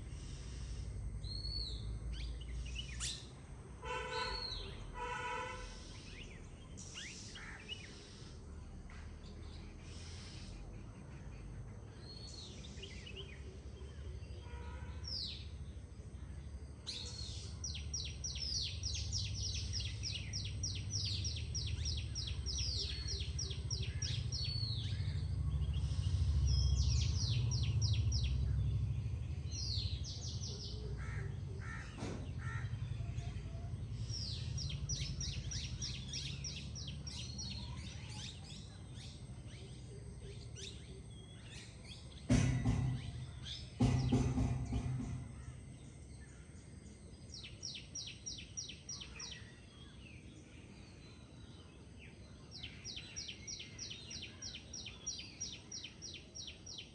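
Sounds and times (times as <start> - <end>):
harsh bird calls: 0.0 - 15.8, 16.8 - 50.0
songbird singing trilled phrases: 0.0 - 15.8, 16.4 - 56.9
low steady rumble: 23.3 - 37.1.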